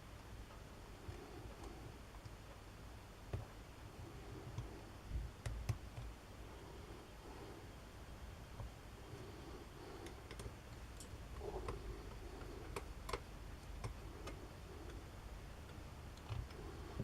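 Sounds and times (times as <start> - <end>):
small parts clicking and tapping: 8.5 - 17.0.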